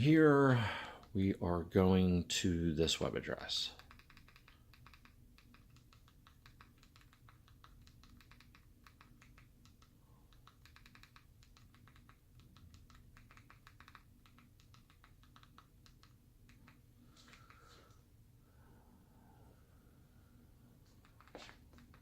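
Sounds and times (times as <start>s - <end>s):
rapid key clicking: 3.7s - 17.6s, 20.9s - 22.0s.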